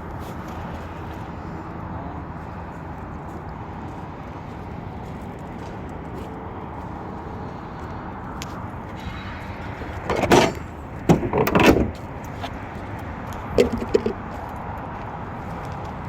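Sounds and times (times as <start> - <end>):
car door moving: 10.0 - 12.0, 13.6 - 14.2.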